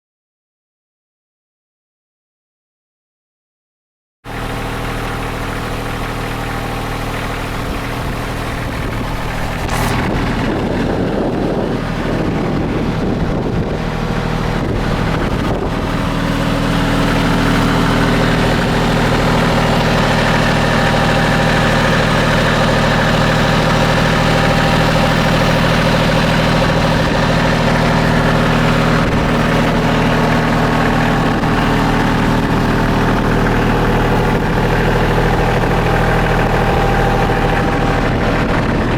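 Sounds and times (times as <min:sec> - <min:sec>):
tractor engine running: 0:04.3 - 0:38.9.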